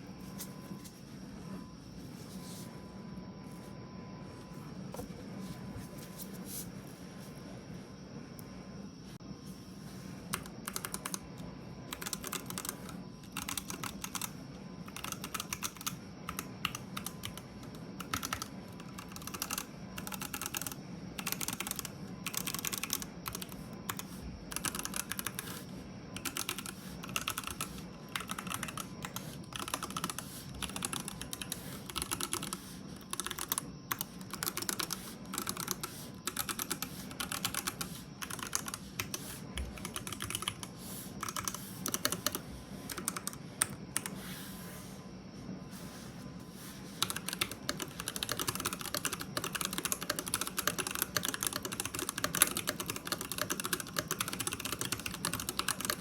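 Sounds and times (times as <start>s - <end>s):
mechanical keyboard typing: 10.3s - 25.6s, 26.2s - 44.2s, 47.0s - 56.0s.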